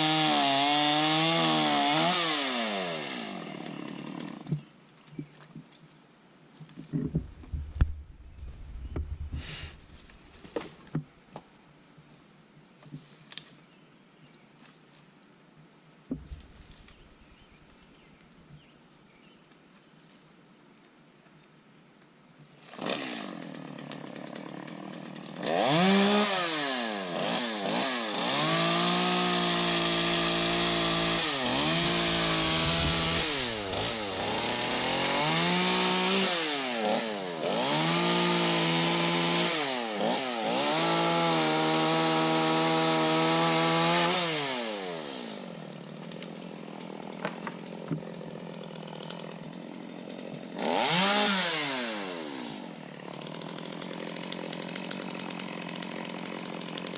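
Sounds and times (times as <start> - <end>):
chainsaw cutting wood: 0.0 - 4.7, 6.8 - 11.0, 16.1 - 17.6, 22.6 - 56.9.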